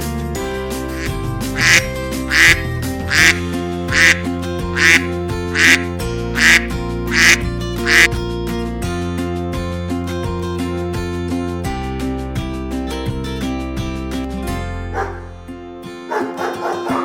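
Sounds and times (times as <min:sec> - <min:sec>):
background music: 0:00.0 - 0:17.0
duck quacking: 0:01.0 - 0:08.1.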